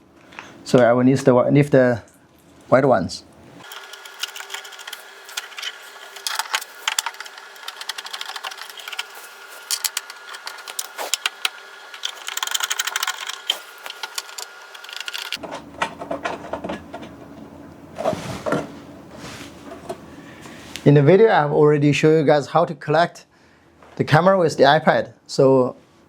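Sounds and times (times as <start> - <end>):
screws driven mechanical clatter: 3.6 - 15.4.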